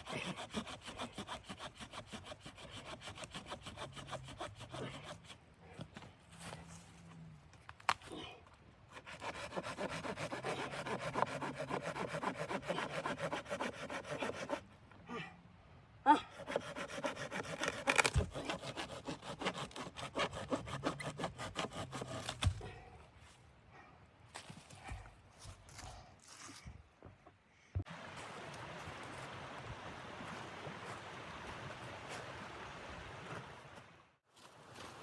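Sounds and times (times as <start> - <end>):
hand saw cutting wood: 0.0 - 5.4, 8.9 - 14.7, 16.3 - 22.6.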